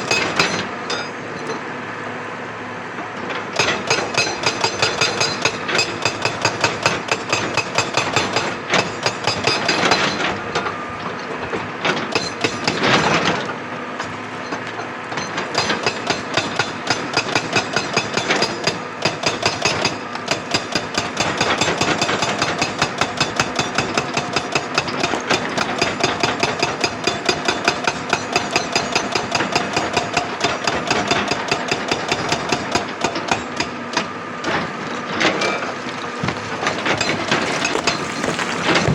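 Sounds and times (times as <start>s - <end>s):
hydraulic rock breaker hammering: 0.0s - 1.6s, 3.5s - 10.7s, 11.3s - 38.9s
engine noise: 33.3s - 38.9s.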